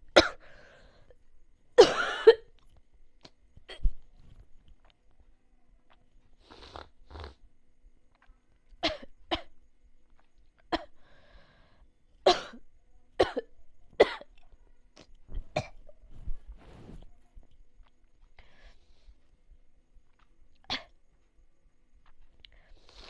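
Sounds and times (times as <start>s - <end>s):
person coughing: 1.8s - 2.5s.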